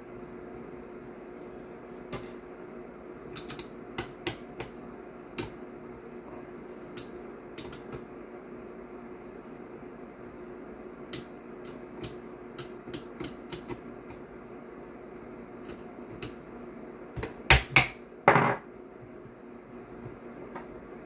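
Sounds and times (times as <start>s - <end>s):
tool knocked on bench: 18.3s - 18.6s.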